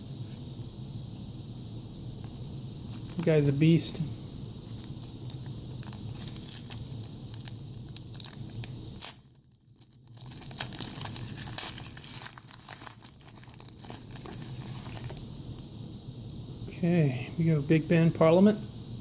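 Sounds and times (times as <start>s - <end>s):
foil wrapper tearing and crinkling: 2.8s - 3.6s, 4.7s - 15.2s.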